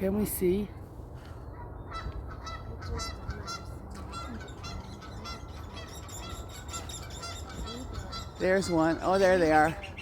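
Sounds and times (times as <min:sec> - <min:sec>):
geese honking: 0:01.9 - 0:10.0.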